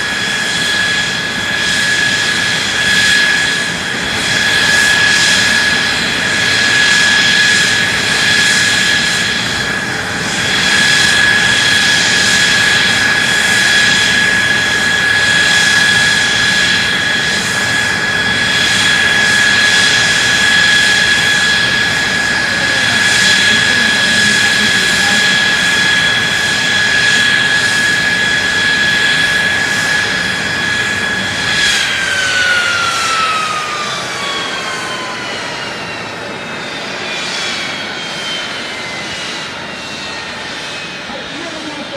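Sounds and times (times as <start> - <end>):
jet engine roar and whine: 0.0 - 41.9.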